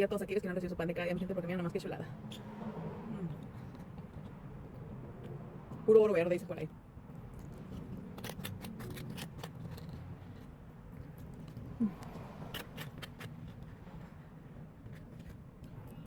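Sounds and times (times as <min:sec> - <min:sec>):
chewing crunches: 0:07.2 - 0:13.7.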